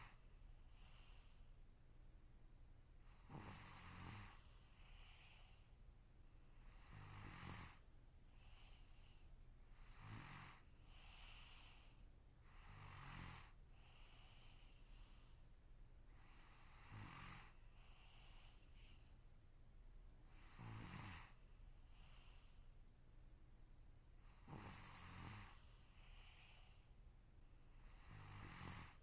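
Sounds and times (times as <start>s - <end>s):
person snoring: 3.2s - 5.6s, 6.7s - 7.8s, 9.8s - 11.8s, 12.5s - 14.5s, 16.5s - 18.5s, 20.3s - 21.4s, 24.4s - 26.8s, 27.8s - 29.0s.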